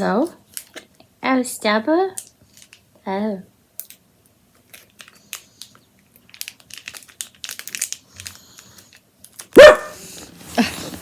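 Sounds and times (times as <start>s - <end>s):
dog barking: 9.6s - 10.0s.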